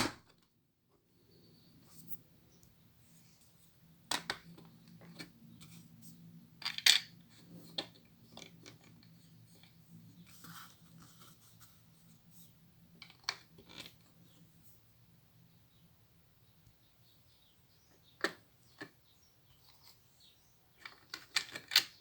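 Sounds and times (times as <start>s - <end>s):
plastic bricks clicking: 20.8s - 22.0s.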